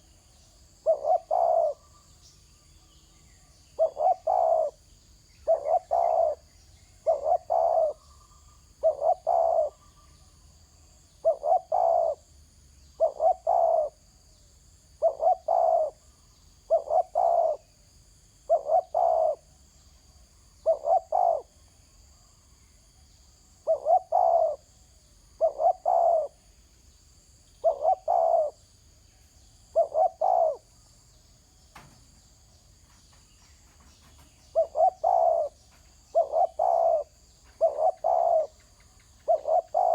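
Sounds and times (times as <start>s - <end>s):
dove cooing: 0.8s - 2.0s, 3.8s - 4.8s, 5.4s - 8.1s, 8.8s - 9.9s, 11.2s - 12.2s, 13.0s - 14.0s, 15.0s - 16.0s, 16.7s - 17.7s, 18.5s - 19.5s, 20.6s - 21.6s, 23.6s - 24.7s, 25.4s - 26.4s, 27.6s - 28.6s, 29.7s - 30.7s, 34.1s - 39.9s.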